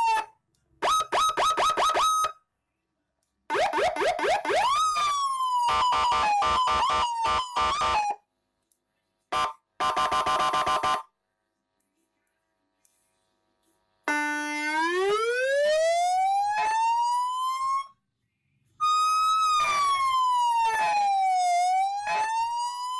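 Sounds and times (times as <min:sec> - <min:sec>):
electronic siren switching tones: 0:00.0 - 0:02.4, 0:03.5 - 0:08.2, 0:14.1 - 0:17.9, 0:18.8 - 0:22.9.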